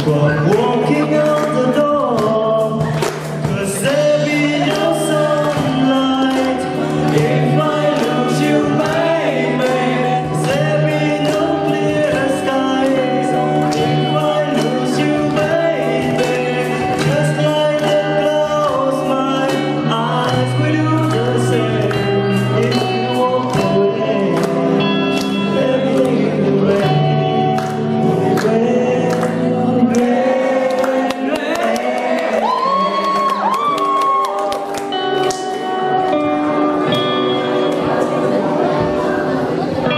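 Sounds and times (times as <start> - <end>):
sustained bass notes: 0.0 - 31.6
band playing with steady beat: 0.0 - 39.9
person singing: 0.0 - 39.9.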